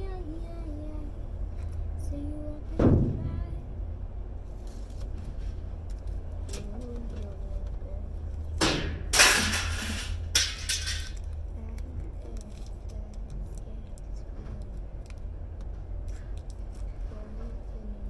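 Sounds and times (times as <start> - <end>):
steady low hum: 0.0 - 18.0
scrap scraping and clattering: 9.0 - 11.2.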